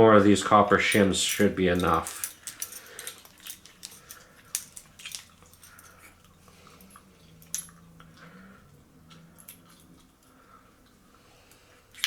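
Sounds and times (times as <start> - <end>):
small metal parts clicking: 0.8 - 10.4.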